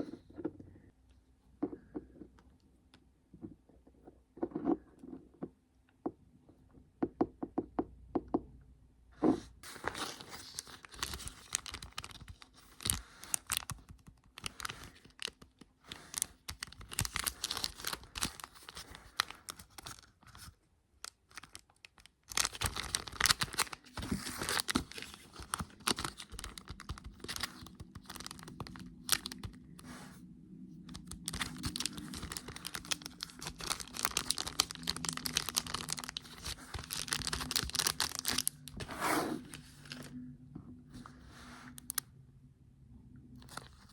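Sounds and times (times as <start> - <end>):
packaging crinkling and tearing: 9.7 - 30.0, 30.9 - 40.1, 41.7 - 42.0, 43.4 - 43.9.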